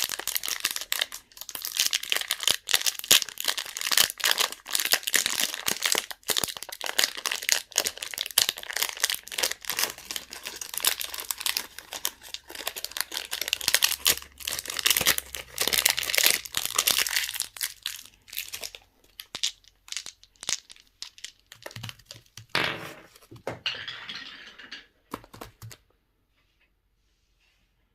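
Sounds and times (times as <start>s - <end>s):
plastic wrappers crinkling: 0.0s - 22.5s.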